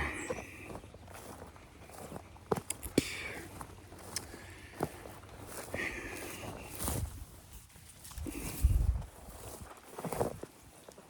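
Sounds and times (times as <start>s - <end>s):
footsteps on wet rocky ground: 0.0s - 11.0s.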